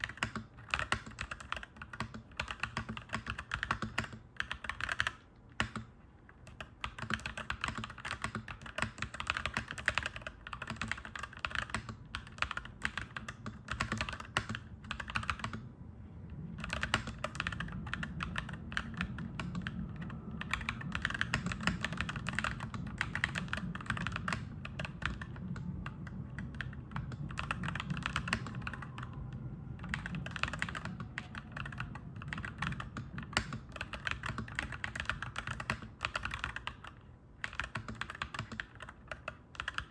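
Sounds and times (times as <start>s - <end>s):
mechanical keyboard typing: 0.0s - 15.7s, 16.6s - 39.9s
low steady rumble: 10.2s - 38.1s.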